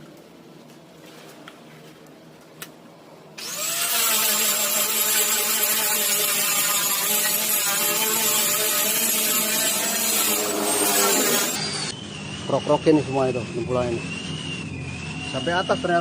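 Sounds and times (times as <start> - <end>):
electric power tool motor whining: 3.4 - 15.8.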